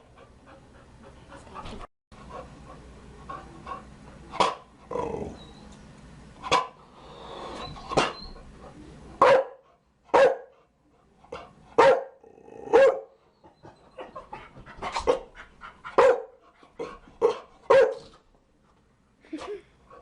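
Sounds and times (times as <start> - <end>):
dog barking: 9.2 - 10.5, 11.8 - 13.2, 16.0 - 16.4, 17.2 - 18.1.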